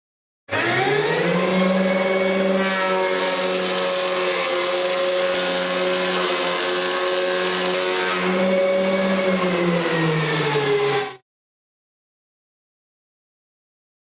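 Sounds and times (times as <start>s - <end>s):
electric motor whine: 0.5s - 11.2s.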